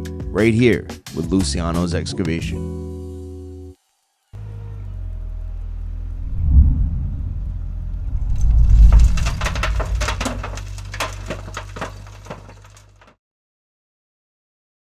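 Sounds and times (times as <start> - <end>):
diesel machinery rumbling: 4.9 - 13.1
clattering and cracking: 8.0 - 13.2.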